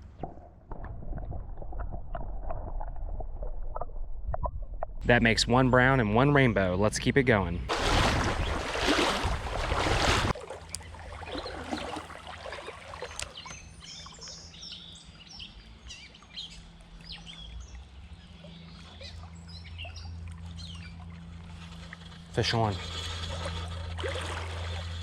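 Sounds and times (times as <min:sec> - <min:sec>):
small birds chirping: 0:12.9 - 0:21.0.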